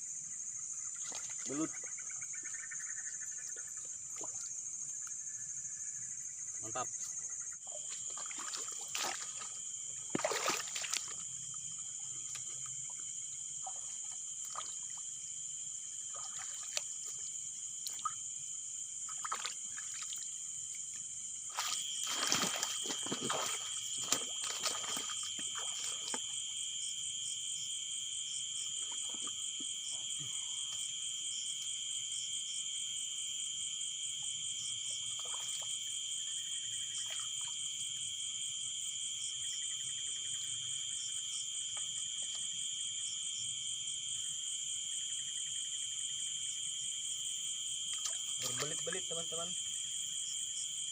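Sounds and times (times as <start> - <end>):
high-pitched insect trilling: 0.0 - 33.0
lower insect trill: 0.0 - 50.9
short knocks and splashes: 7.7 - 11.2, 13.6 - 15.0, 16.1 - 17.2, 19.1 - 20.2, 21.5 - 26.4, 28.8 - 29.8, 47.9 - 49.0.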